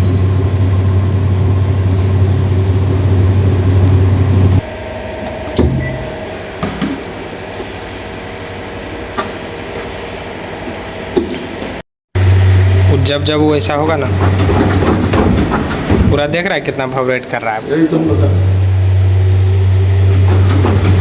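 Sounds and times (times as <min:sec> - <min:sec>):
washing machine loud low hum: 0:00.0 - 0:21.0
washing machine drum knocks: 0:04.6 - 0:07.1.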